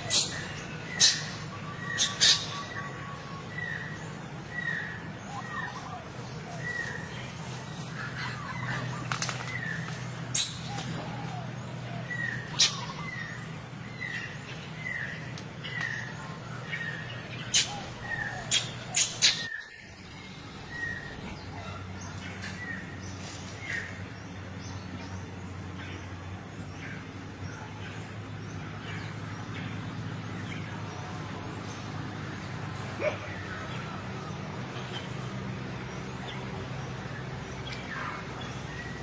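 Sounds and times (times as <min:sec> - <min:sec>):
steady low hum: 0:00.0 - 0:39.0.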